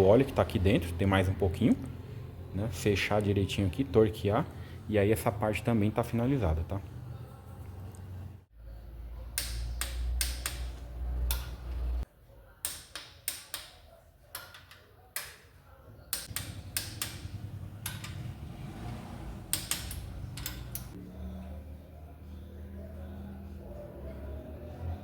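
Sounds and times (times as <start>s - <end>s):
hand tools clicking on metal: 9.3s - 11.9s, 12.6s - 15.5s, 16.1s - 18.3s, 19.4s - 21.0s.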